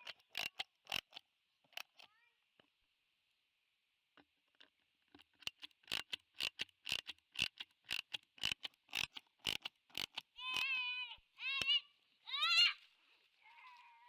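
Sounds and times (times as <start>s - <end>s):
sharp clicks: 0.0s - 2.9s, 4.1s - 10.8s.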